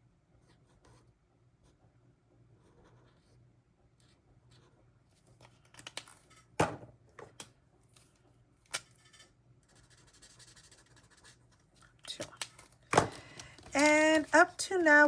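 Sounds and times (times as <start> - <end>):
pens and paper handled on desk: 10.7 - 15.0.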